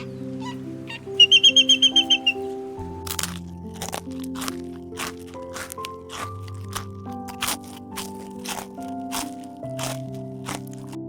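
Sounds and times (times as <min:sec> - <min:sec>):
music with held notes: 0:00.0 - 0:11.0
crunchy percussive hits: 0:03.0 - 0:11.0.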